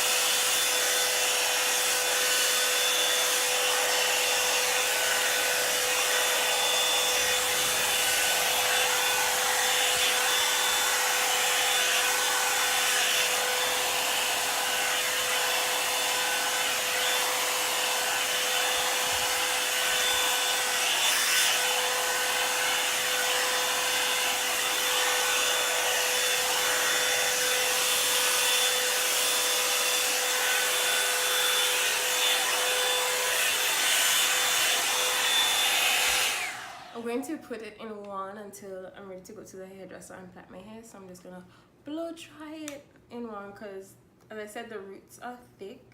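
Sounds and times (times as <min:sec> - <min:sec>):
hair dryer brush running: 0:00.0 - 0:37.2.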